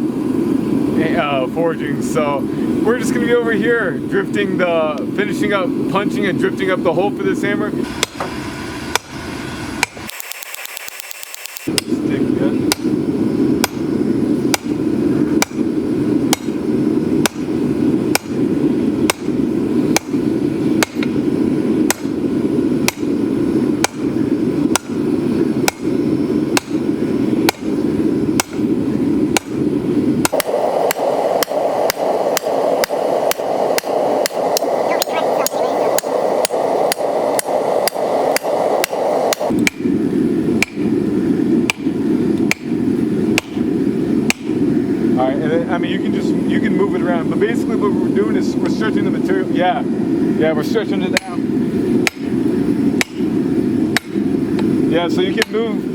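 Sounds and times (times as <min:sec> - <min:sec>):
steady rushing noise: 0:00.0 - 0:55.9
hammer striking steel on anvil: 0:08.0 - 0:08.3, 0:08.9 - 0:09.2, 0:11.4 - 0:12.0, 0:12.7 - 0:12.9, 0:13.6 - 0:13.8, 0:14.5 - 0:14.8, 0:15.4 - 0:15.6, 0:16.3 - 0:16.6, 0:17.2 - 0:17.5, 0:18.1 - 0:18.4, 0:19.1 - 0:19.3, 0:19.9 - 0:20.2, 0:20.8 - 0:21.1, 0:21.9 - 0:22.1, 0:22.8 - 0:23.1, 0:24.7 - 0:25.0, 0:25.6 - 0:25.9, 0:26.5 - 0:26.8, 0:27.5 - 0:27.7, 0:28.4 - 0:28.6, 0:29.3 - 0:29.6, 0:38.4 - 0:39.9, 0:40.6 - 0:40.9, 0:41.7 - 0:41.9, 0:42.5 - 0:42.7, 0:43.4 - 0:43.6, 0:44.3 - 0:44.5, 0:52.0 - 0:52.3, 0:53.0 - 0:53.3, 0:54.0 - 0:54.2.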